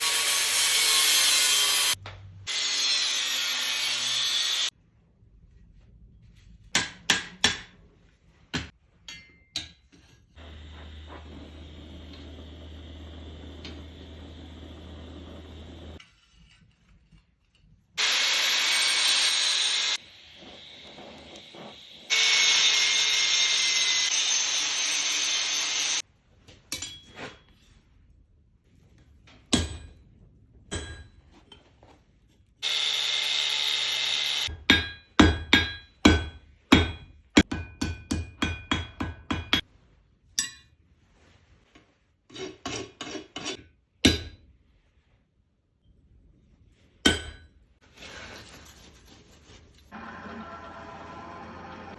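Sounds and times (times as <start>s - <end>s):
power tool grinding metal: 0.0s - 4.7s, 10.4s - 16.0s, 18.0s - 26.0s, 32.6s - 34.5s, 49.9s - 51.9s
hammer striking steel: 6.7s - 7.8s, 29.5s - 30.0s, 30.7s - 31.2s, 34.5s - 39.7s, 44.0s - 44.4s, 47.0s - 47.6s.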